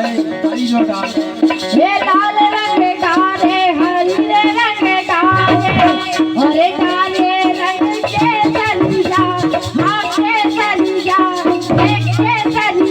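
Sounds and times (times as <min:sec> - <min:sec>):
folk music melody: 0:00.0 - 0:12.9
steady percussion beat: 0:00.0 - 0:12.9.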